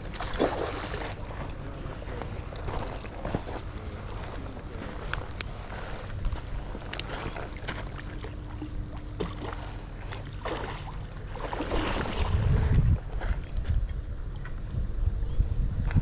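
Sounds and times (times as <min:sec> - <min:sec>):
moving water: 0:00.0 - 0:14.6
wind buffeting microphone: 0:11.3 - 0:16.0.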